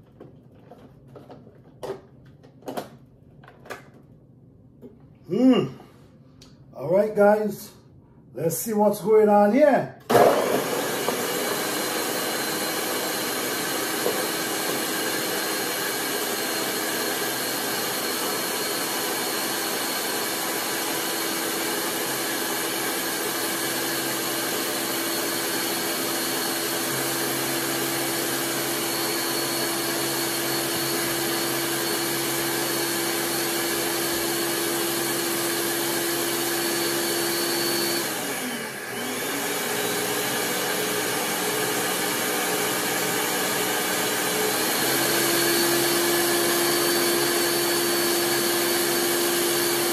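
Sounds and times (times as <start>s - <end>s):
blender motor whining: 10.1s - 49.9s.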